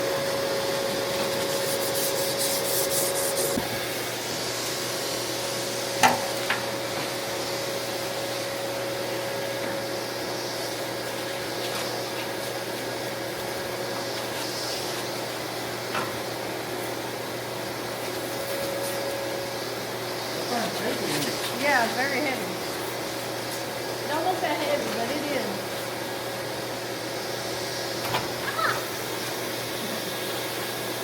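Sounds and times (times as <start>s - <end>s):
steady mechanical hum: 0.0s - 31.0s.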